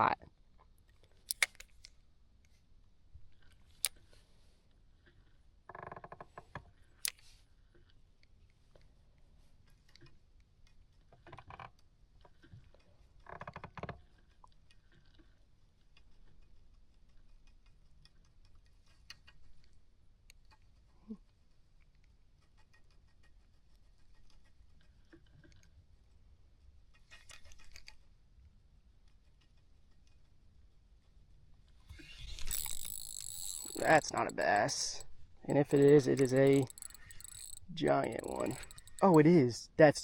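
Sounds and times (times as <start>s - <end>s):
sharp clicks of fishing gear: 1.2s - 2.0s, 31.9s - 39.5s.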